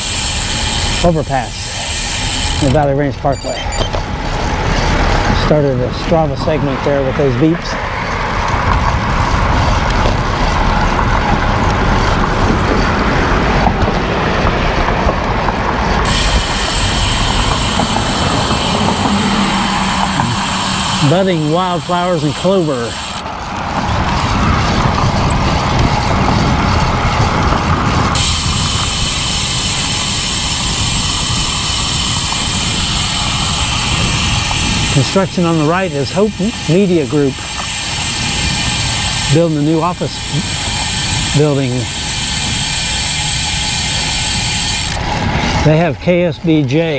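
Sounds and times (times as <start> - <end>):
bicycle road noise: 0.0 - 46.9
high-pitched whine: 1.7 - 4.5, 16.1 - 23.4
wind buffeting microphone: 3.9 - 45.7.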